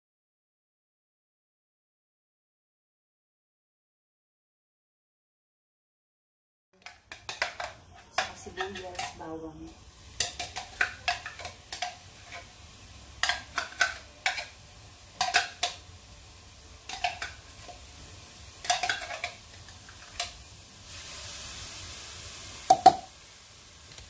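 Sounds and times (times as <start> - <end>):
metal clattering on pan: 6.8 - 9.2, 10.2 - 12.5, 13.2 - 14.6, 15.2 - 15.8, 16.9 - 17.8, 18.6 - 20.4
metal spoon scraping pan: 6.8 - 9.3, 10.1 - 12.6, 13.2 - 14.6, 15.2 - 15.8, 16.8 - 17.8, 18.6 - 20.4
food sizzling: 6.8 - 24.0.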